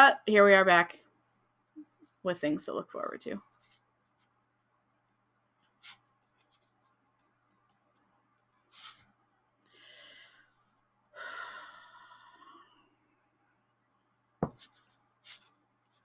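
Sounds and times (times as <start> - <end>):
person gasping and sighing: 11.2 - 12.6
sharp tap: 14.4 - 14.7.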